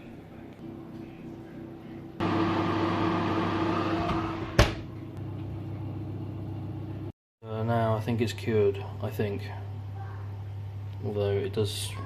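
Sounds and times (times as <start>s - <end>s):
oven humming: 0.7s - 7.1s.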